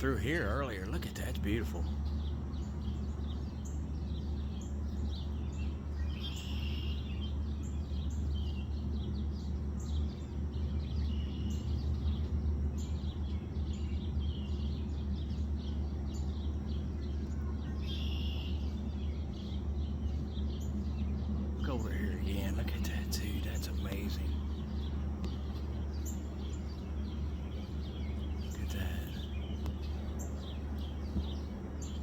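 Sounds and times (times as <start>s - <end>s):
birds chirping and calling: 0.0s - 32.0s
low rumble: 7.2s - 32.0s.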